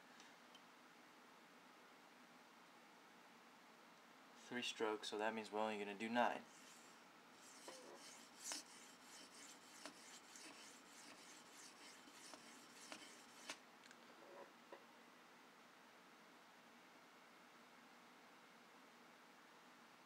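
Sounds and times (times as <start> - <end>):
knife scraping on sharpening stone: 6.5 - 13.6.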